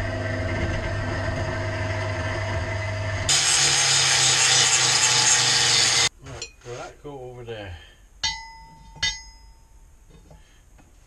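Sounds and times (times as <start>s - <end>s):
angle grinder cutting steel: 3.3s - 6.5s.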